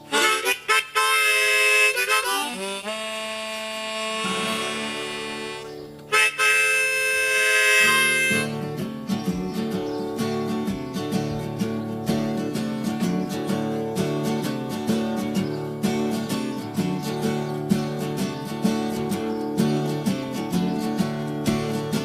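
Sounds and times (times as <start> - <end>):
harmonica playing blues: 0.0 - 9.0
acoustic guitar strumming: 0.0 - 22.0.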